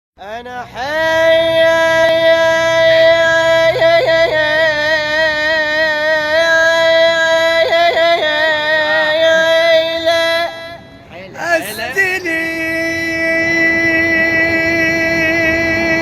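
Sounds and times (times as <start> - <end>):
person singing long high note: 0.3 - 16.0.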